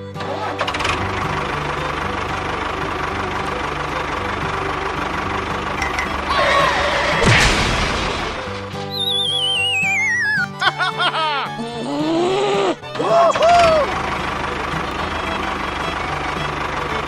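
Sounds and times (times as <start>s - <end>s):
engine idling with low chugging: 0.0s - 9.4s, 12.8s - 17.0s
wavering falling tone: 8.9s - 10.6s.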